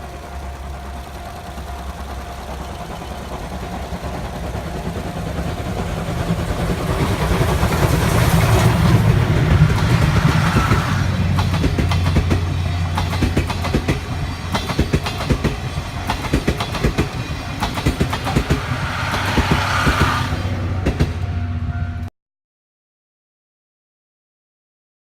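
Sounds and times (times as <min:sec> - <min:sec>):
steam locomotive approaching: 0:00.0 - 0:22.1.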